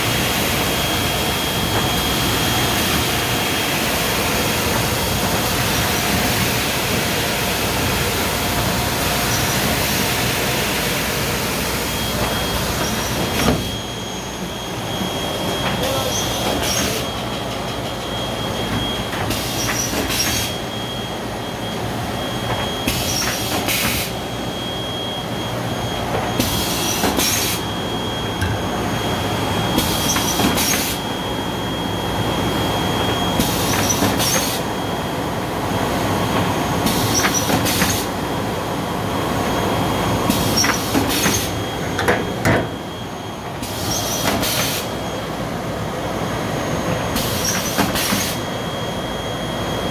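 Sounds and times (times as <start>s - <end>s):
washing machine rumbling: 25.4s - 31.5s.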